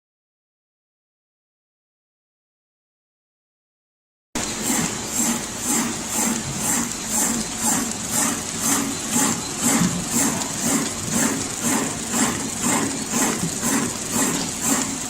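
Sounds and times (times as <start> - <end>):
machine clacking: 4.4 - 15.0.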